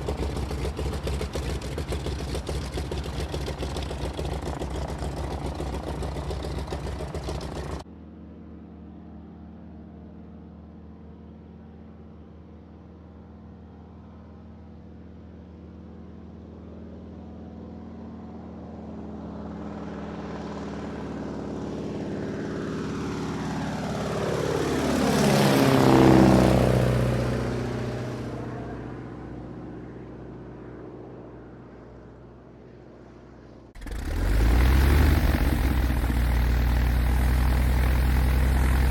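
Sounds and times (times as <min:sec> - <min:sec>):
loud engine sound: 0:00.0 - 0:07.8, 0:33.8 - 0:38.9
propeller airplane flying over: 0:00.0 - 0:38.9.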